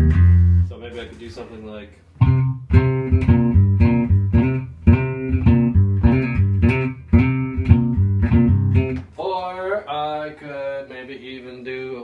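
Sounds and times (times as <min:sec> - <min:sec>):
repeating low bass riff: 0:00.0 - 0:00.7, 0:02.2 - 0:09.0.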